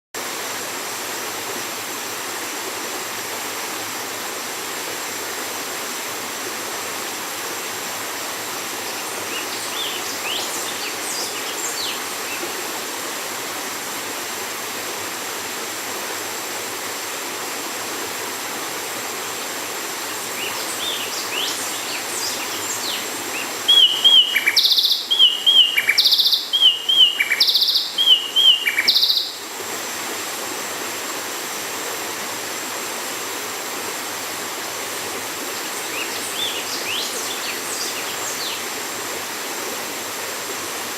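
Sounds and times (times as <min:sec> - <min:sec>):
bird singing whistled notes: 0:20.4 - 0:29.4, 0:35.9 - 0:38.6.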